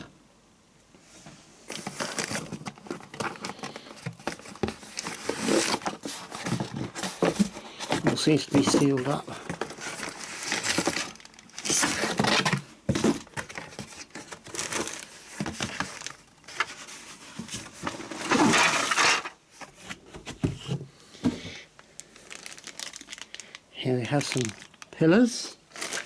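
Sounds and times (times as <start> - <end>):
packaging rustling: 1.7 - 26.0.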